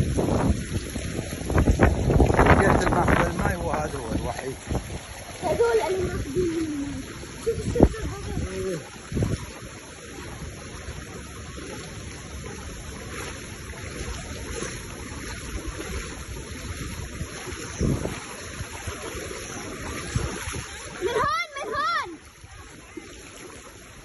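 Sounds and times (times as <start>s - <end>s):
storm wind rushing: 0.0s - 6.4s
floodwater rushing: 0.0s - 24.0s.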